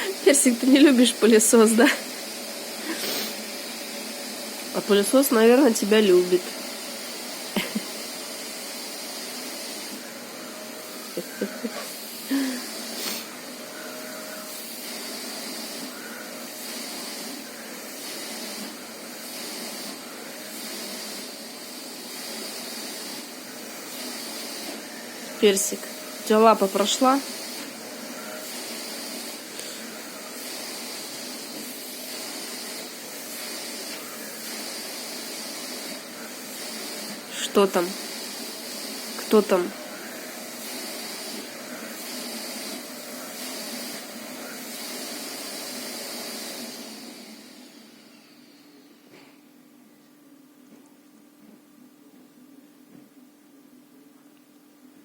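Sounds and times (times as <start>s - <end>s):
vacuum cleaner running: 0.0s - 49.5s.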